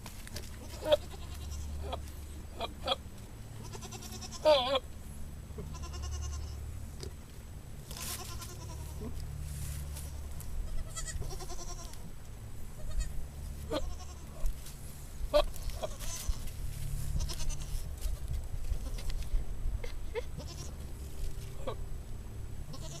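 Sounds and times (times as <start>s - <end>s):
goat bleating: 0.6s - 4.9s, 5.5s - 6.6s, 7.9s - 9.2s, 10.1s - 12.0s, 12.8s - 14.6s, 15.3s - 16.5s, 17.1s - 19.0s, 19.9s - 20.9s, 22.7s - 23.0s.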